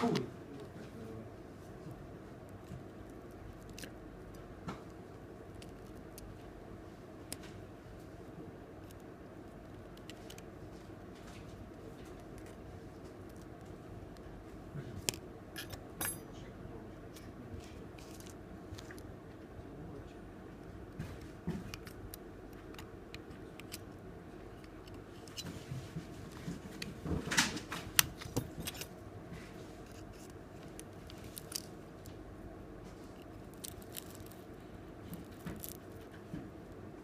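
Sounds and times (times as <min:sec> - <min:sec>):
steady low hum: 0:00.0 - 0:37.0
small tools clicking and scraping: 0:15.0 - 0:16.3, 0:28.0 - 0:28.9, 0:33.1 - 0:34.4, 0:35.1 - 0:36.1.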